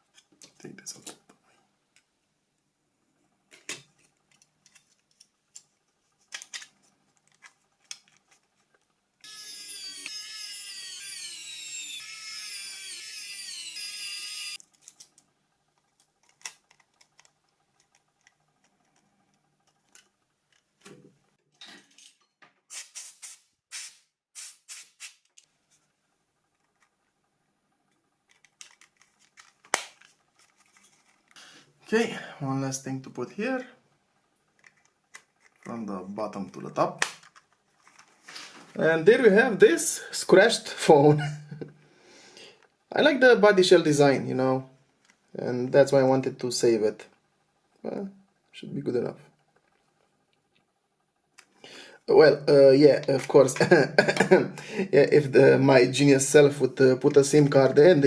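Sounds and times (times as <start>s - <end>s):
plastic phone parts clicking: 6.3s - 8.4s, 14.6s - 19.0s, 28.3s - 31.2s, 34.6s - 35.7s, 37.0s - 38.1s
shrill squeaky falling tones: 9.2s - 14.6s.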